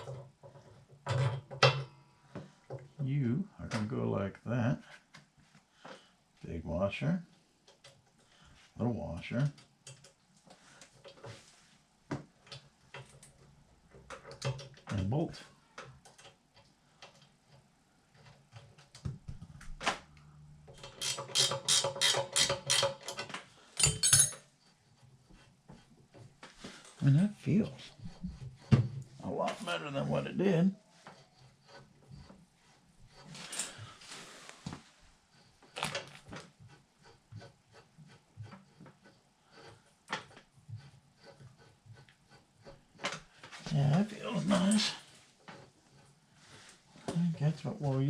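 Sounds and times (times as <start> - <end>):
clatter of tools: 0.0 - 2.0, 20.7 - 24.5, 33.2 - 34.0
bike chain clicking and rattling: 20.7 - 24.5.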